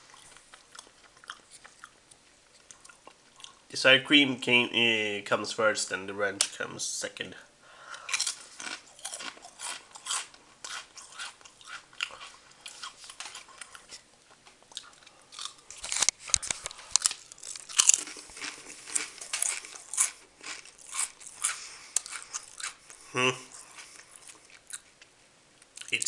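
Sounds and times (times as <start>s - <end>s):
potato chips crunching: 8.0s - 25.0s.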